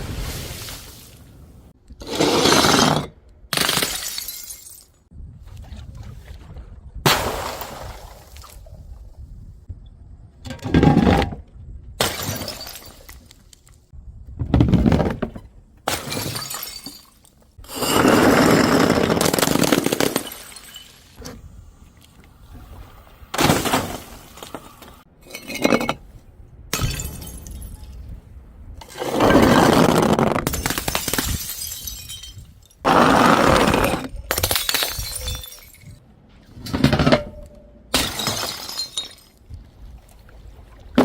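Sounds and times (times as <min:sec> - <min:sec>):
glass bottles and jars shattering: 0:02.8 - 0:05.0, 0:12.0 - 0:13.3, 0:15.9 - 0:21.2, 0:25.2 - 0:26.0, 0:26.8 - 0:28.0, 0:30.4 - 0:32.9, 0:33.8 - 0:36.0, 0:37.9 - 0:39.4.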